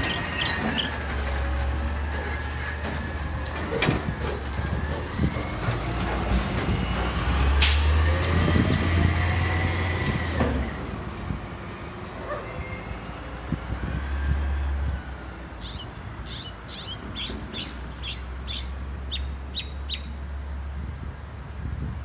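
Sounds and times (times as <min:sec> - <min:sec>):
heavy vehicle rumbling past: 0:00.0 - 0:16.3.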